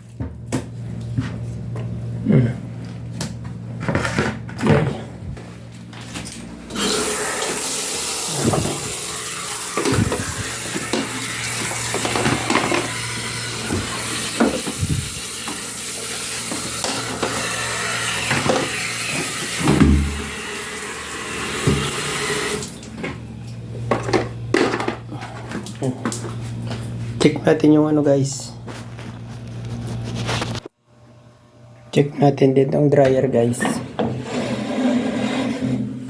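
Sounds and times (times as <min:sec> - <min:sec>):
water running from a tap: 0:06.7 - 0:23.0.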